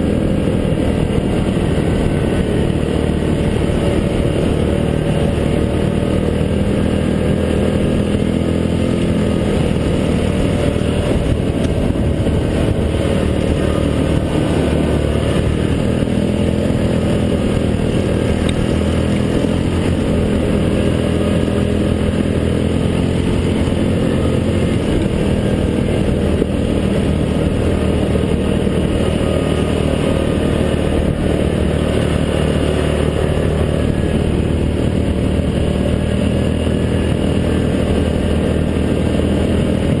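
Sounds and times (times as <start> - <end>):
quad bike engine running: 0.0 - 40.0.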